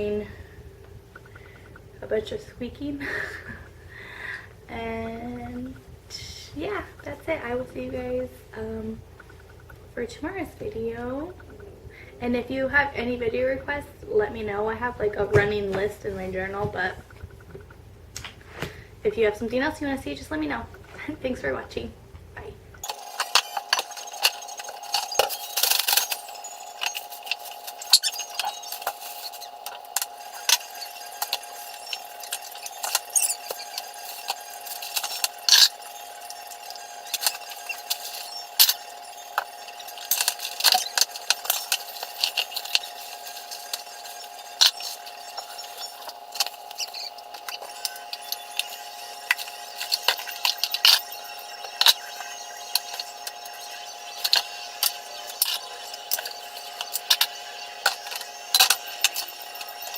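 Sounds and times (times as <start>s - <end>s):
steady tone: 22.7s - 59.9s
glass jars clinking: 22.8s - 59.9s.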